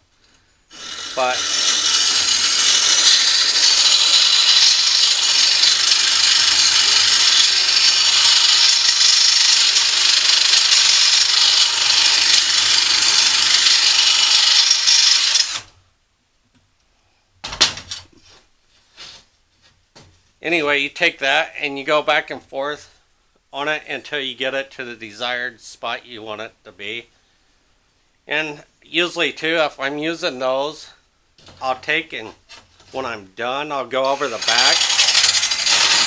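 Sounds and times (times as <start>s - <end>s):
stone grinding mower blade: 0.7s - 15.7s, 34.0s - 36.0s.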